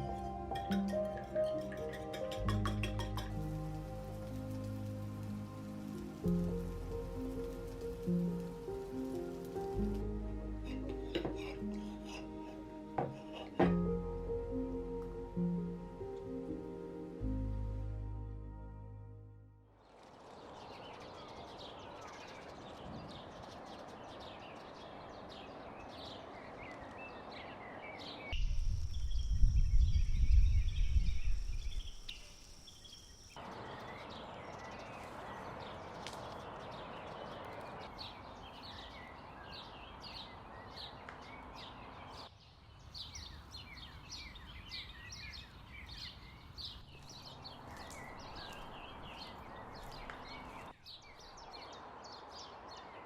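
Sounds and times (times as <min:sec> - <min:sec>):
steady outdoor hiss: 0:00.0 - 0:19.0, 0:19.7 - 0:53.0
small birds chirping: 0:20.2 - 0:53.0.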